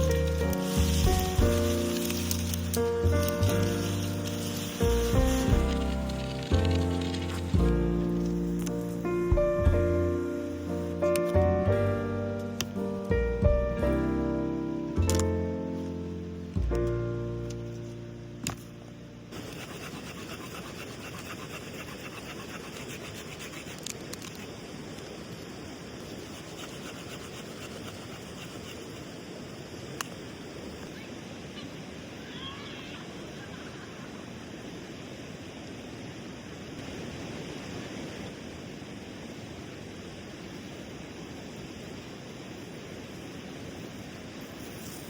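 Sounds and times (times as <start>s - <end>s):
river water rushing: 0.0s - 7.9s.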